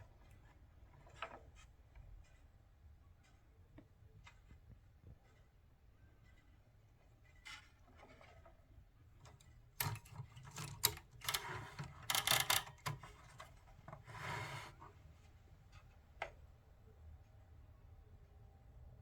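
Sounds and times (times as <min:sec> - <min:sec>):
typewriter metal parts clicking: 0:09.3 - 0:13.4
scraping rubbing sounds: 0:13.9 - 0:15.0.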